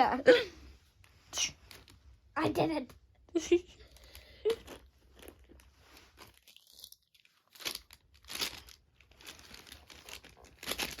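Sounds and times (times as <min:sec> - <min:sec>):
plastic packaging crinkling and tearing: 0:03.9 - 0:11.0.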